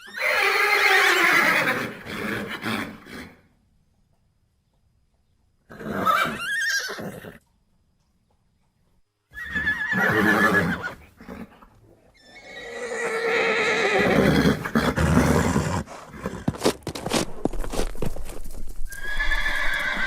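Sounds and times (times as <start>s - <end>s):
horse whinnying: 0.0s - 3.4s, 5.7s - 7.4s, 9.3s - 16.6s, 18.9s - 20.0s.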